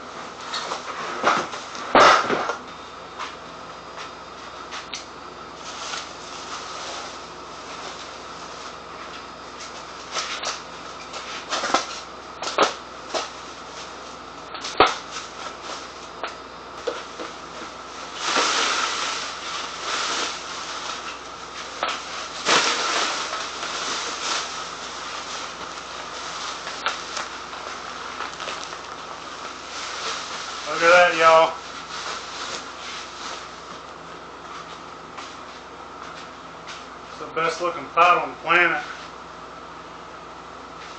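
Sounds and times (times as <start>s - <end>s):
packaging rustling: 18.2s - 30.8s.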